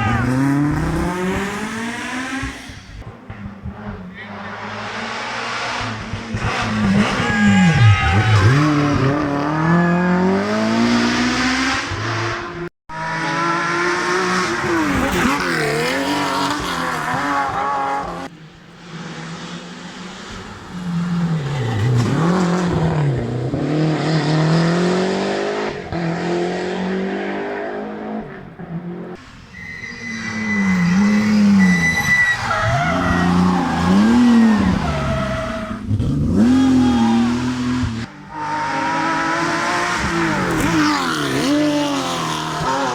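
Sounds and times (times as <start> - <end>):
rally car engines revving: 0.0 - 42.9
tyre squeal: 6.6 - 9.0, 29.2 - 37.6.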